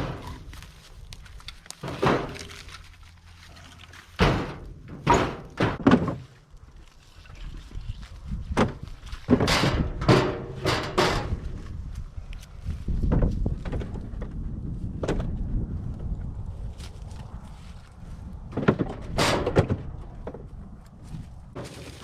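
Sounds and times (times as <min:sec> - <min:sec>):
firewood knocking onto pile: 0:04.2 - 0:06.3.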